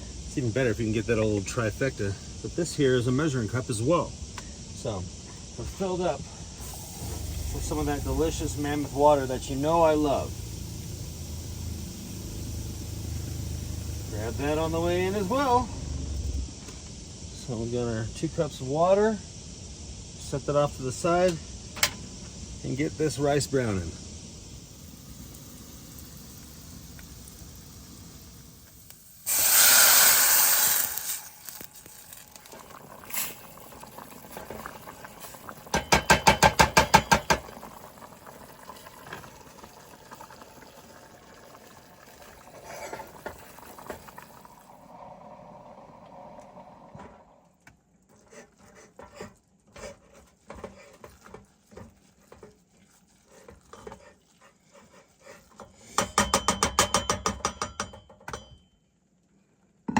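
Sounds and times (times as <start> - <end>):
rice sizzling in frying pan: 0.0 - 15.6, 18.8 - 44.8
loud hiss: 0.0 - 39.0
utensil scraping and tapping: 48.1 - 57.8.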